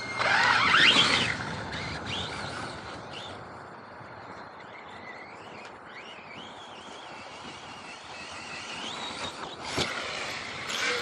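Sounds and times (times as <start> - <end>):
electric motor whining: 0.0 - 3.4, 4.4 - 11.0.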